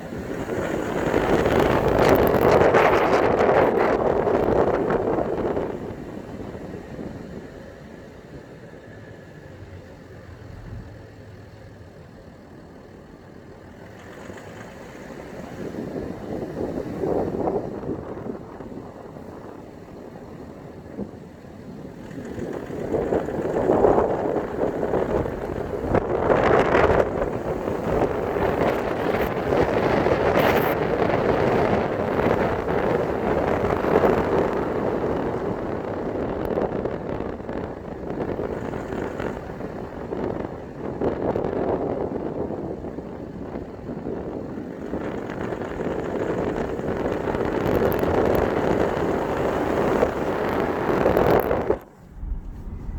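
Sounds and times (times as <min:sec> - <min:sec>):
wind noise on microphone: 0:00.0 - 0:08.5, 0:14.1 - 0:52.9
diesel engine running: 0:51.2 - 0:52.9.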